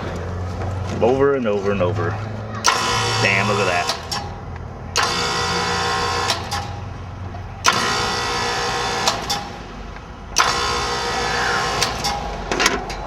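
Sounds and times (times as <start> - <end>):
compressor humming: 2.5 - 12.6
compressor switch click: 2.6 - 4.4, 5.0 - 6.9, 7.6 - 12.4.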